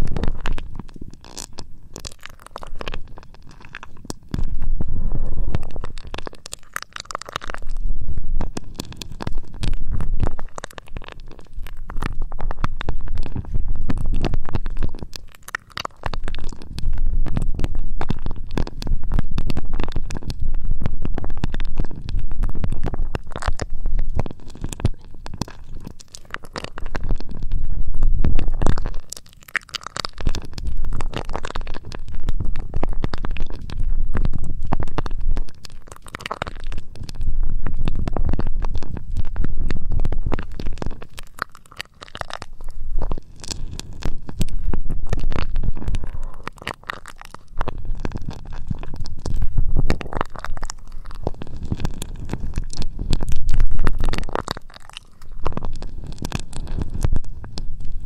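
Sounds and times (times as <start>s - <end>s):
crackling scratches in ear: 0.0s - 58.0s
low rumble: 4.3s - 6.4s, 7.5s - 15.0s, 16.5s - 24.4s, 26.8s - 29.1s, 42.4s - 46.4s.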